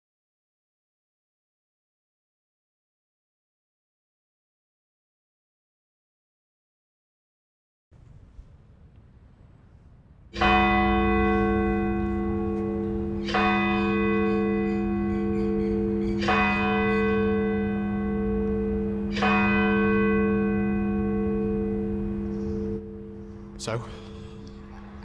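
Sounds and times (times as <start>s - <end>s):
large bell ringing: 8.0s - 25.0s.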